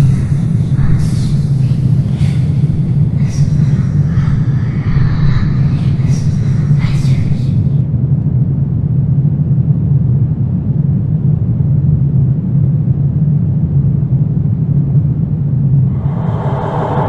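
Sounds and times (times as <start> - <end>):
low rumbling drone: 0.0 - 9.0, 13.2 - 17.0.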